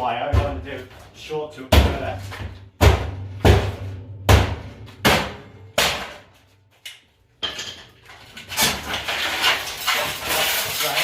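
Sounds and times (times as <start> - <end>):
hammer striking metal: 2.8 - 6.5.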